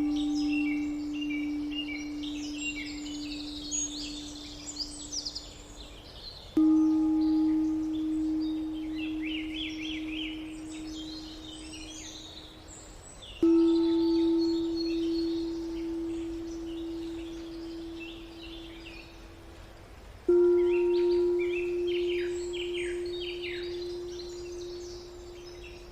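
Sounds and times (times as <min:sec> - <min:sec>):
birds chirping: 0:00.0 - 0:25.9
singing bowl ringing: 0:00.0 - 0:25.9.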